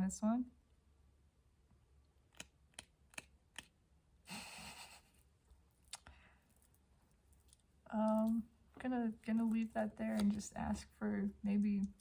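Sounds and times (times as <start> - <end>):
soft card rustle: 5.8 - 12.0.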